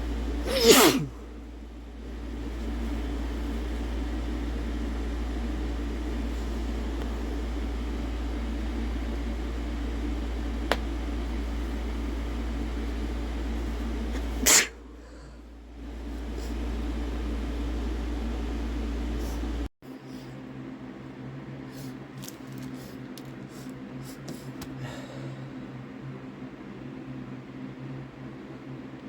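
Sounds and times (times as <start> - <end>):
steady background hum: 0.0 - 29.0
person sneezing: 0.4 - 1.2, 14.2 - 14.8.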